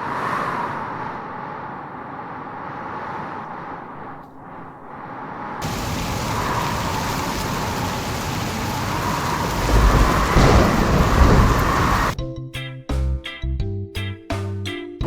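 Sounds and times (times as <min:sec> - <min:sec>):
deep rumble of thunder: 0:05.6 - 0:12.2
heavy rain: 0:05.6 - 0:12.2
music: 0:12.2 - 0:15.0.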